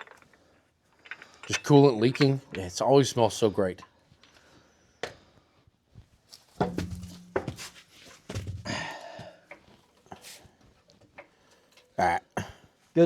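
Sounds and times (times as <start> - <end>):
knocks and thunks on truck wheel: 6.6 - 8.8
person grunting and breathing hard: 8.6 - 9.3.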